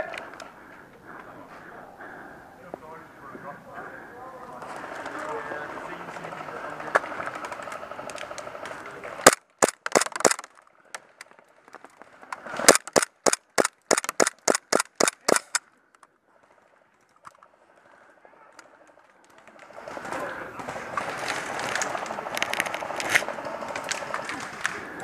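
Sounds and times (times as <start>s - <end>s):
airsoft gun shots: 9.2s - 10.5s, 12.6s - 15.6s.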